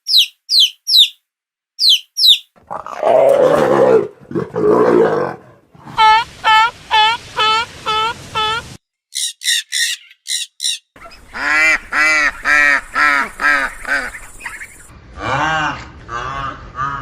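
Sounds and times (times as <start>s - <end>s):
high-pitched animal calls: 0.0s - 1.2s, 1.8s - 3.6s.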